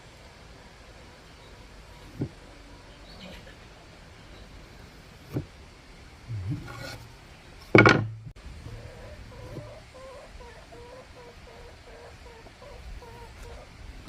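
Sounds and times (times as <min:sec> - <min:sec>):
wooden rubbing scrape: 0:06.3 - 0:08.2.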